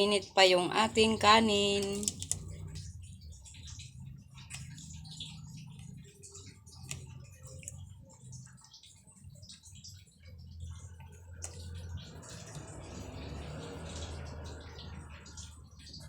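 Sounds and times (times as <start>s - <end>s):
low steady hum: 0.0s - 16.0s
small eating clicks: 0.0s - 16.0s
chewing: 1.9s - 2.9s.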